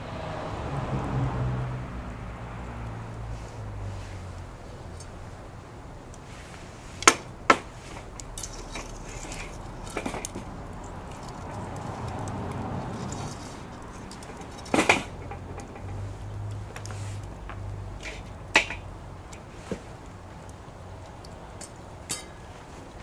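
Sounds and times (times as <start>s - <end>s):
wood fire crackling: 0.1s - 23.0s
loud fire pops: 6.5s - 23.0s.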